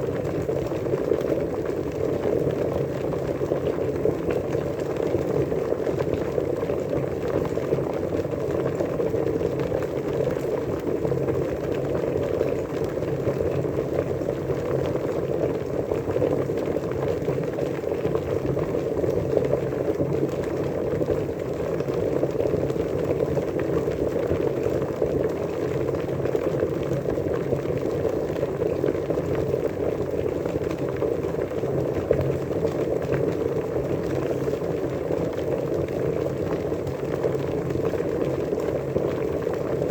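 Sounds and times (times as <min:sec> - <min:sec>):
water boiling: 0:00.0 - 0:39.9.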